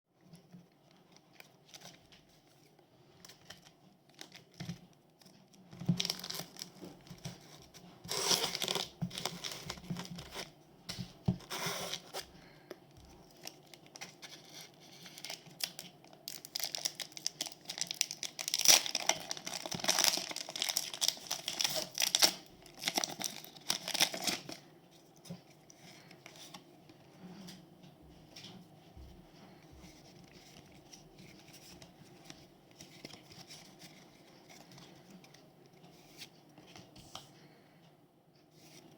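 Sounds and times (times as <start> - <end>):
foil wrapper tearing and crinkling: 5.9 - 6.8, 8.1 - 9.7, 15.1 - 24.6.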